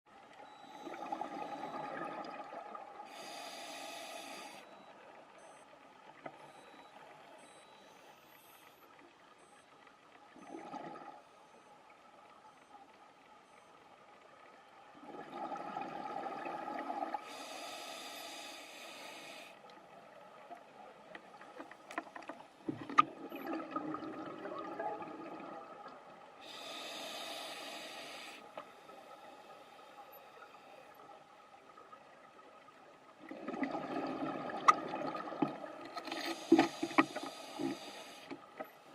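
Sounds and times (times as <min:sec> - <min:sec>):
scuba regulator breathing: 0:03.1 - 0:04.8, 0:17.2 - 0:19.6, 0:26.4 - 0:31.0, 0:36.2 - 0:38.4
exhaled air bubbling: 0:23.1 - 0:27.1, 0:33.2 - 0:35.9.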